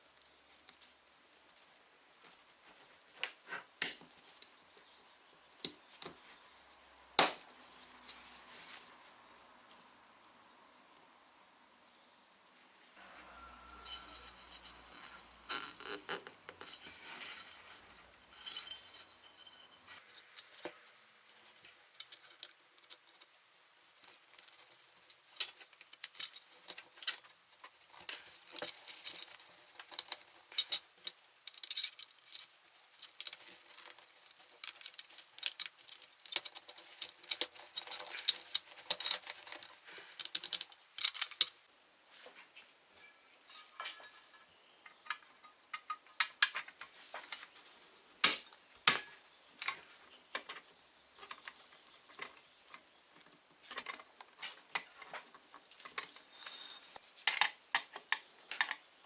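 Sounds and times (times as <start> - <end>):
small metal parts clinking: 13.4 - 41.6, 53.7 - 57.8.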